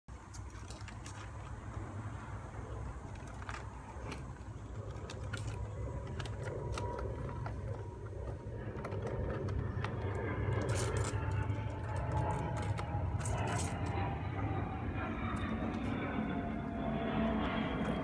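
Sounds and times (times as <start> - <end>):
parrot chewing cardboard: 0.1 - 14.2
steady low hum: 0.1 - 18.0.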